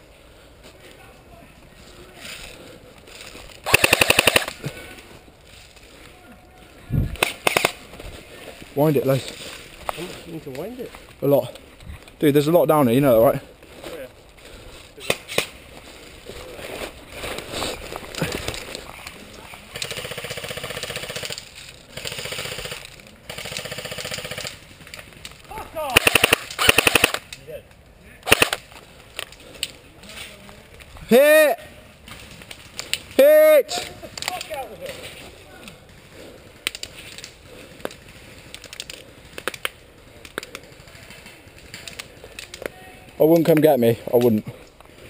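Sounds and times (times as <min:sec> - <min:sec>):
airsoft gun shots: 0:03.6 - 0:04.5, 0:25.9 - 0:27.2, 0:28.2 - 0:28.6.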